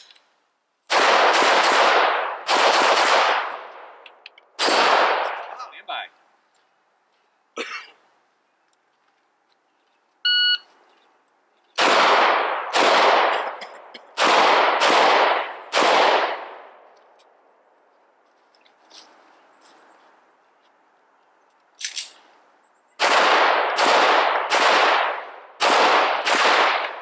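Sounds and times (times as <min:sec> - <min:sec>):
pistol shots echoing: 0:00.9 - 0:03.7, 0:04.6 - 0:05.6, 0:11.8 - 0:13.6, 0:14.2 - 0:16.8, 0:23.0 - 0:27.0
shot timer beep: 0:10.3 - 0:10.6.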